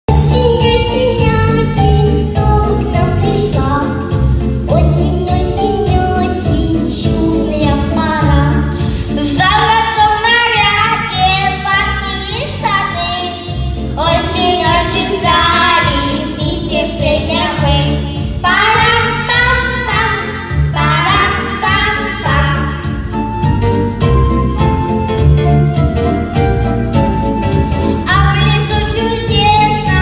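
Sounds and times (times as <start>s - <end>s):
child singing: 0.1s - 4.0s, 4.7s - 8.6s, 9.2s - 22.9s, 28.1s - 30.0s
backing track with bass line: 0.1s - 30.0s.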